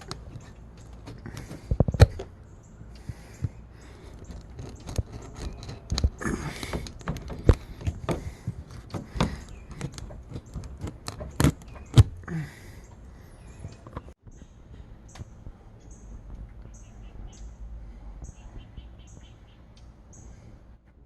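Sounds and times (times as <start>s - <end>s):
tire plug tools clicking: 3.0s - 13.0s.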